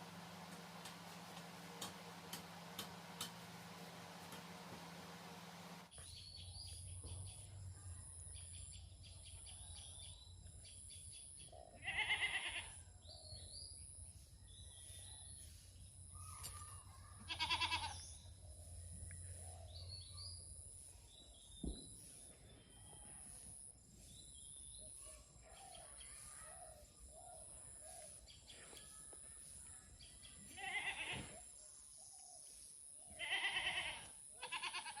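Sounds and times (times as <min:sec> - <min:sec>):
goat bleating: 0:11.8 - 0:12.7, 0:17.3 - 0:18.0, 0:30.6 - 0:31.3, 0:33.2 - 0:35.0.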